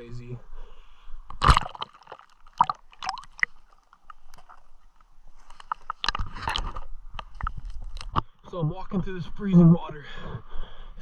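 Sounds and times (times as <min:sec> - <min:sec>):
water splashing from wading: 0:01.4 - 0:04.6.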